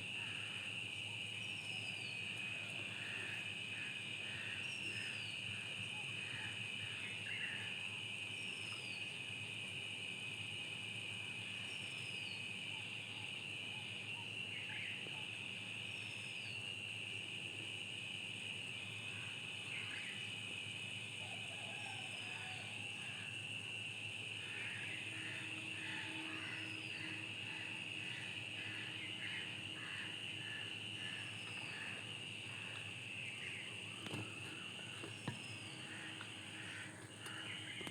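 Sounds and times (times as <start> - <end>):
insect chorus: 0.0 - 37.9.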